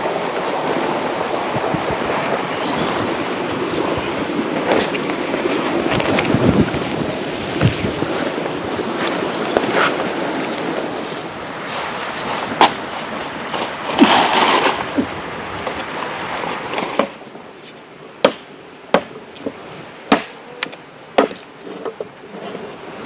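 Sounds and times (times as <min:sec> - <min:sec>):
wind buffeting microphone: 0:00.0 - 0:20.2
water rushing: 0:00.0 - 0:23.0
sharp knocks: 0:18.2 - 0:22.1.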